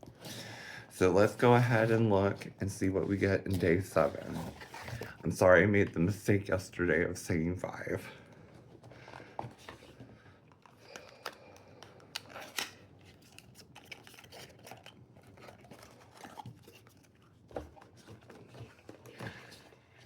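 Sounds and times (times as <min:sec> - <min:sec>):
faint handling clicks and scrapes: 0:01.2 - 0:05.3, 0:12.2 - 0:20.0.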